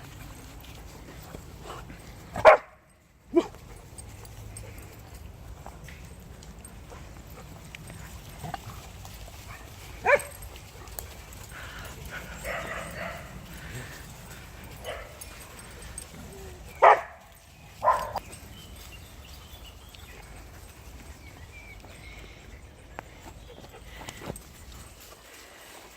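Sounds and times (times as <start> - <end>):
dogs barking: 1.6 - 5.1, 6.6 - 18.3.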